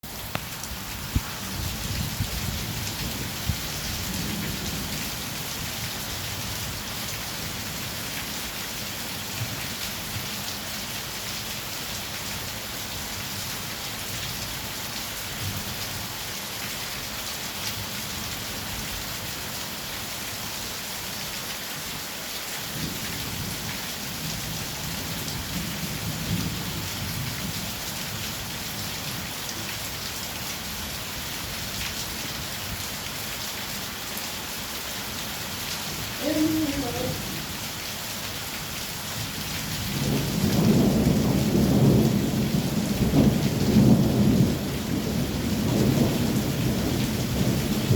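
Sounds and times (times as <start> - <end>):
heavy rain falling: 0.0 - 47.9
thunder rumbling: 39.9 - 47.9.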